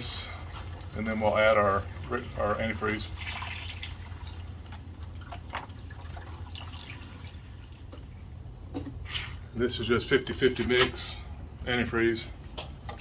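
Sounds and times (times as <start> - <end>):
liquid trickling into radiator: 0.0 - 9.0.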